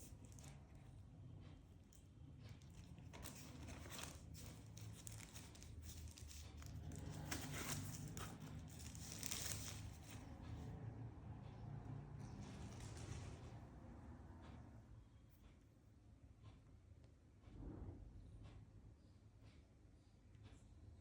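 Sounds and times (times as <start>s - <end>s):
plastic and paper crinkling: 0.0s - 1.0s, 1.9s - 10.4s
packaging tearing: 2.6s - 10.2s.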